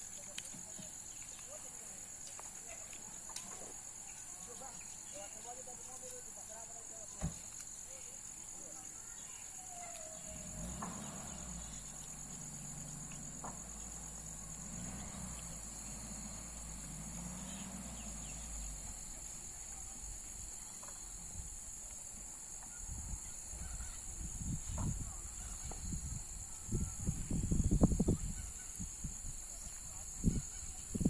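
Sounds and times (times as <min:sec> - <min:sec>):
insects chirring: 0:00.0 - 0:31.0
low vehicle engine rumble: 0:09.8 - 0:21.8.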